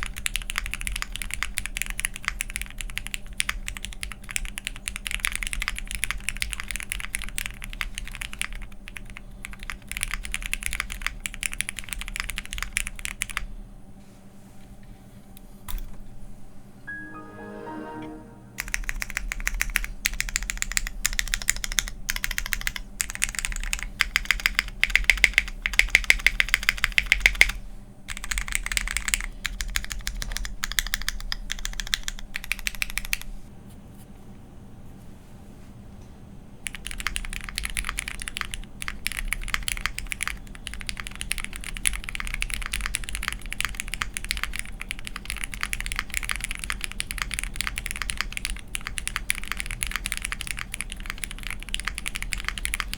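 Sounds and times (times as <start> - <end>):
fast mechanical keyboard typing: 0.0 - 13.5, 18.6 - 33.3, 36.6 - 52.9.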